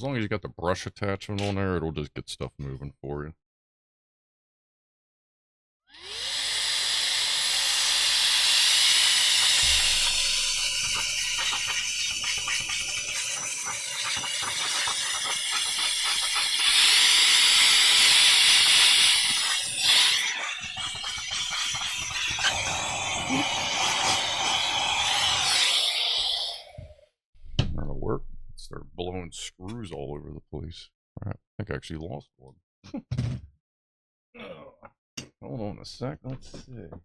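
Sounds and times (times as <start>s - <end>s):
hiss of blowing air: 6.0s - 26.9s
vacuum-blower motor whine: 6.0s - 26.9s.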